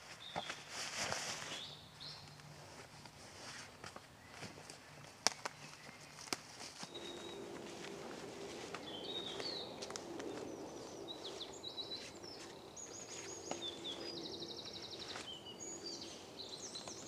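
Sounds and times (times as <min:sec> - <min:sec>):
faint low hum: 0:00.5 - 0:17.0
birds whistling and chirping: 0:06.8 - 0:17.0
bird fast trill: 0:06.9 - 0:17.0.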